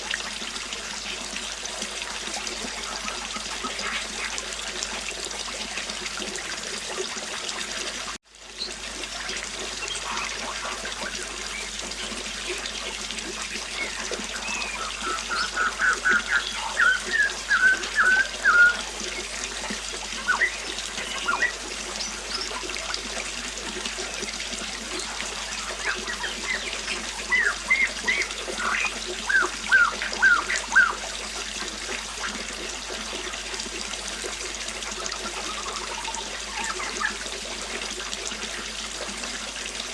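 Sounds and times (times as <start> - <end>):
river flowing: 8.8 - 38.2
songbird chirping: 13.7 - 19.4, 20.2 - 22.6, 25.0 - 31.0.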